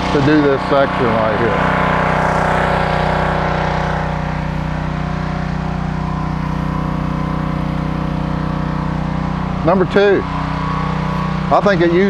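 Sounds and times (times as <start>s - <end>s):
pressure washer engine running: 0.0s - 12.0s.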